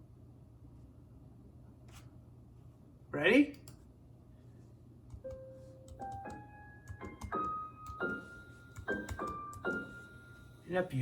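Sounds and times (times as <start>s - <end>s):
synthesised piano notes: 5.2s - 10.8s.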